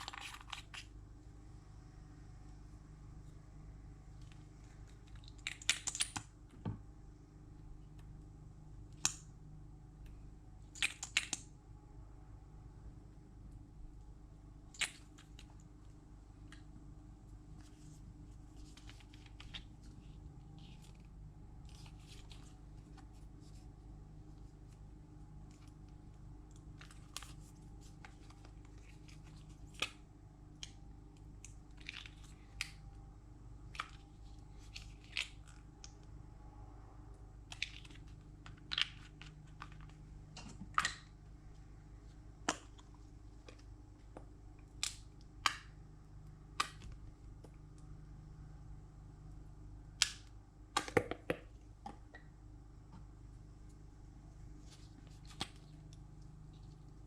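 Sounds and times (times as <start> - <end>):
steady low hum: 0.0 - 50.8, 51.4 - 57.0.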